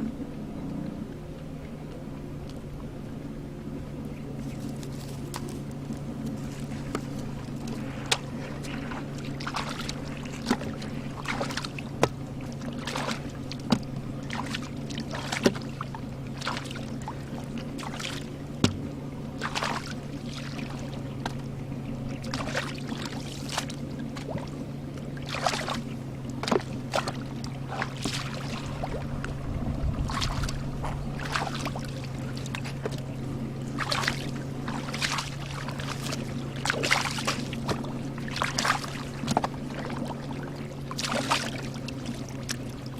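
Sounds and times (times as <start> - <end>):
steady low hum: 0.0 - 42.9
hands splashing water: 25.2 - 25.8, 26.4 - 28.9, 33.8 - 40.0, 40.9 - 42.7.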